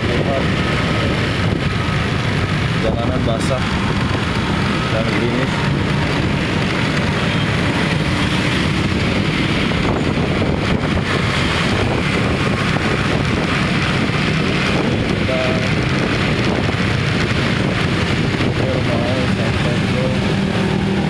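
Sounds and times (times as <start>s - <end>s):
road traffic: 0.0s - 21.0s
wind on microphone: 0.0s - 21.0s.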